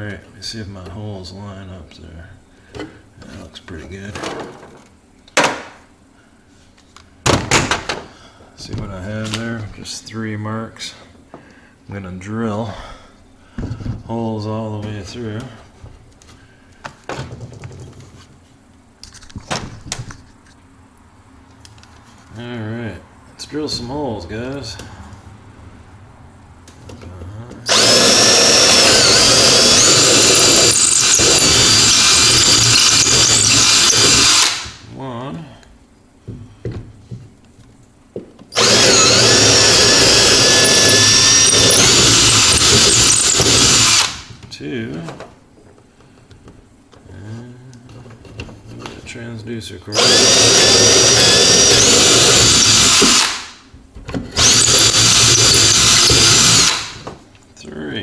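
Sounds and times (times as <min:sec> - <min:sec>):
power drill whining: 0:27.7 - 0:34.8, 0:38.5 - 0:44.3, 0:49.9 - 0:53.6, 0:54.4 - 0:57.1.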